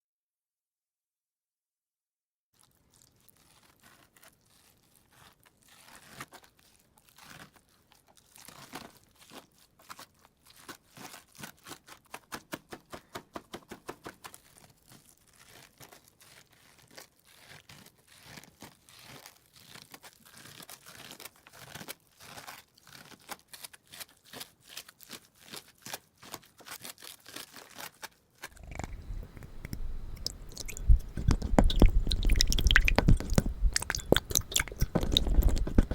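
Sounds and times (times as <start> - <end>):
slime sticky clicks and crackles: 28.5 - 35.9.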